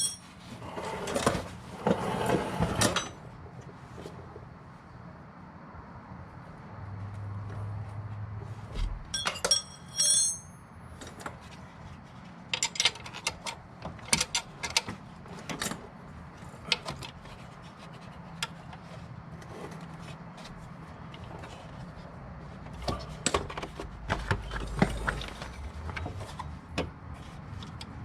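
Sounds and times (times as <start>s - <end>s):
metal tools clinking and rattling: 0.0s - 0.3s, 9.1s - 11.3s
short ringing clang: 9.2s - 10.6s.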